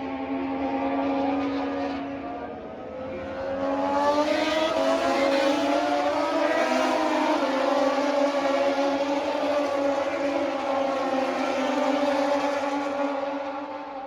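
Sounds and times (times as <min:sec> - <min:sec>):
racing engines passing at high revs: 0:00.0 - 0:14.0.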